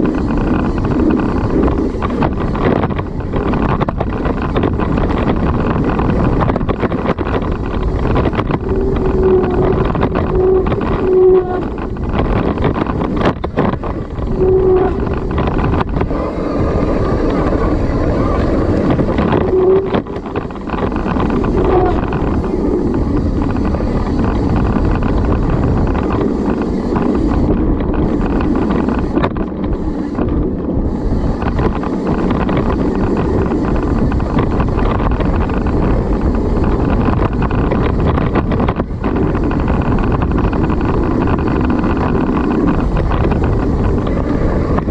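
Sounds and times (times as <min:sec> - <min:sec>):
bike tyres on dirt trail: 0:00.0 - 0:44.9
wind buffeting microphone: 0:00.0 - 0:44.9.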